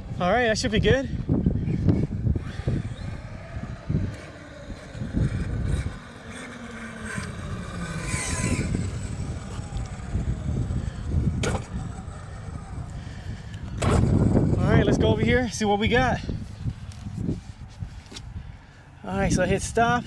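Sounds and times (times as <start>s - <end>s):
wind buffeting microphone: 0.0s - 20.0s
electric motor whining: 1.5s - 15.5s.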